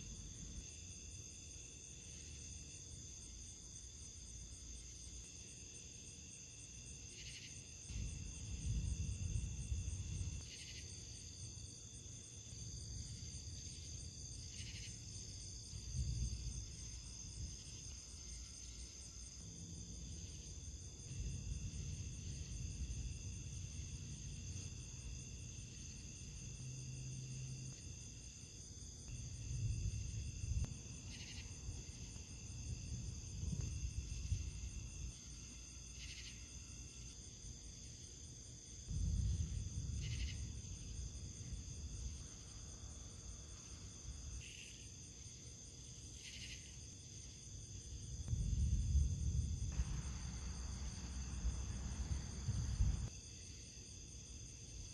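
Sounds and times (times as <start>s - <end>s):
crickets trilling: 0.0s - 54.9s
low rumble: 48.2s - 53.1s.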